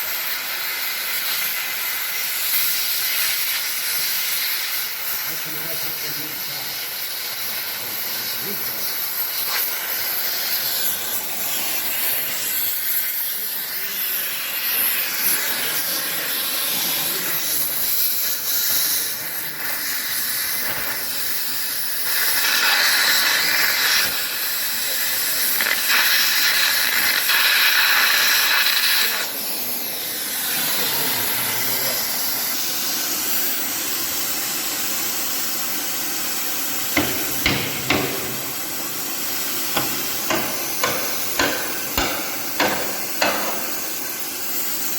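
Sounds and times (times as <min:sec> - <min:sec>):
cutting torch hissing: 0:00.0 - 0:44.9
sharp metal knocks: 0:37.0 - 0:38.4, 0:39.8 - 0:43.6.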